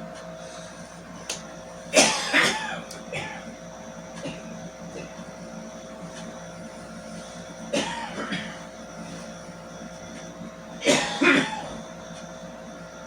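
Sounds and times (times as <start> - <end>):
man clearing throat: 1.9 - 3.5, 4.2 - 5.3, 7.7 - 8.7, 10.8 - 11.8
man coughing: 1.9 - 3.5, 4.2 - 5.3, 7.7 - 8.7, 10.8 - 11.8.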